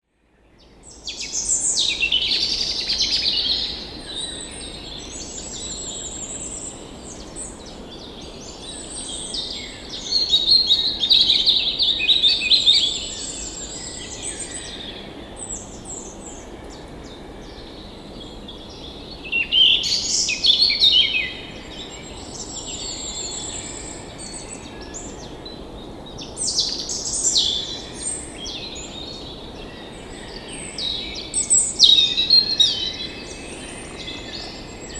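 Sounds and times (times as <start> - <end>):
songbirds singing and chirping: 0.4 - 34.9.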